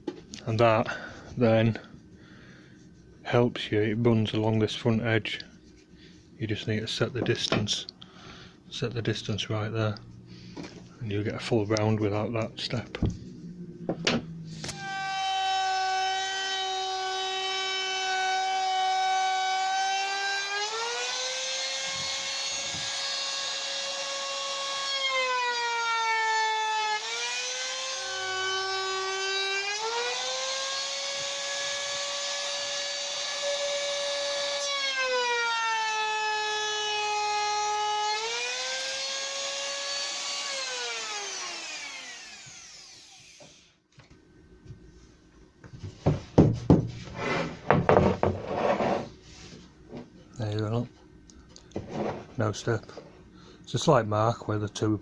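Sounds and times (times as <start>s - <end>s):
electric router whining: 13.5s - 44.1s.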